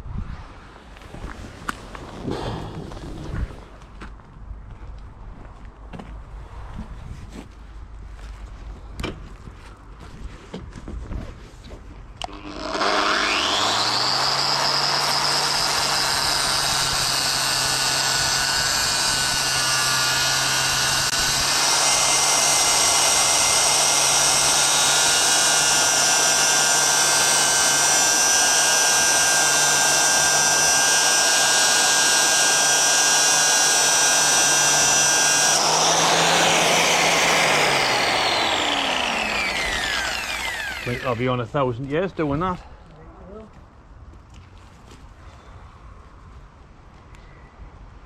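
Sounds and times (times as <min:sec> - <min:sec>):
angle grinder whining: 0:12.2 - 0:41.5.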